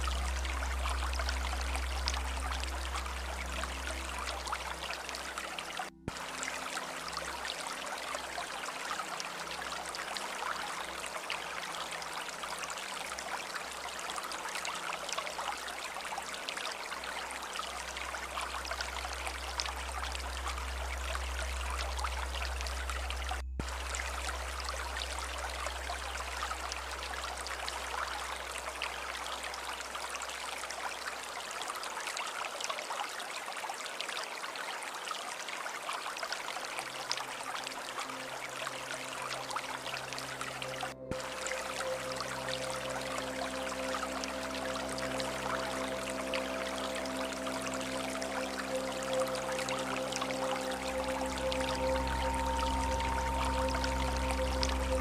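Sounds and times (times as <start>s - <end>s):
low rumble: 0.0s - 7.5s, 17.8s - 28.8s, 50.5s - 55.0s
stream rushing and trickling: 0.0s - 55.0s.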